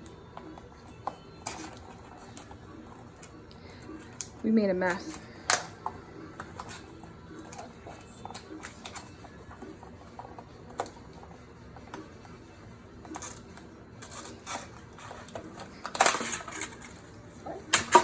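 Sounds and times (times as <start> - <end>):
kitchen clicks and knocks: 17.7 - 18.0.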